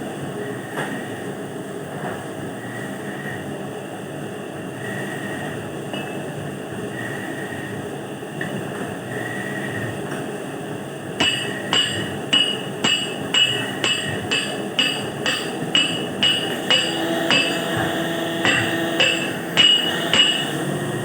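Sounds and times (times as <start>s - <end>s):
steady mechanical noise: 9.1s - 21.0s
hammer blows with metallic ring: 11.2s - 21.0s.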